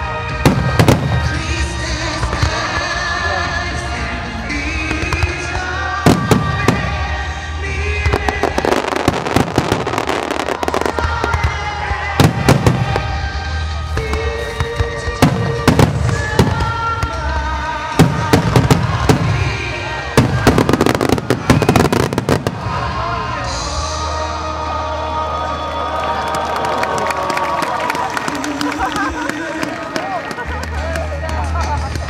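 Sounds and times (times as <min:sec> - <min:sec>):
firework cracks and crackling: 0:04.8 - 0:23.0
firework booms: 0:06.1 - 0:07.1, 0:20.2 - 0:22.8.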